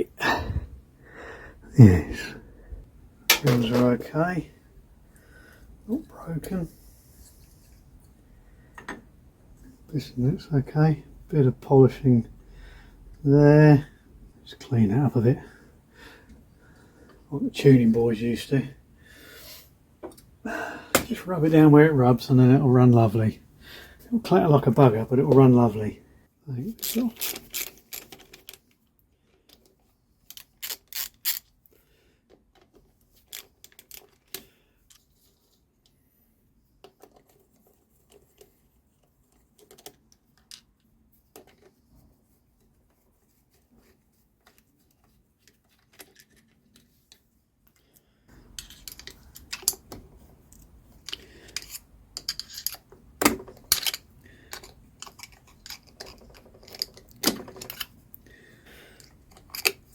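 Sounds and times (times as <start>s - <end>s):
low steady background noise: 0.0s - 59.9s
metal tools clinking: 3.3s - 4.0s.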